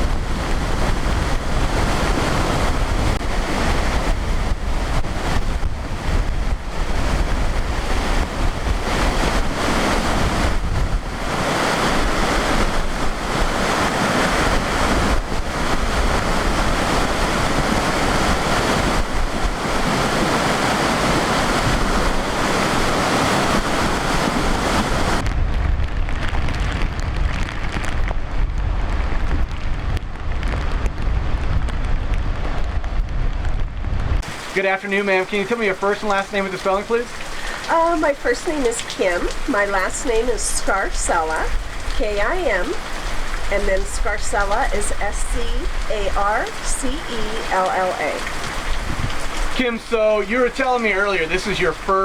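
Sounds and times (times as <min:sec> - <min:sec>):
rushing runoff water: 0:00.0 - 0:25.8, 0:34.2 - 0:52.0
wind buffeting microphone: 0:00.0 - 0:52.0.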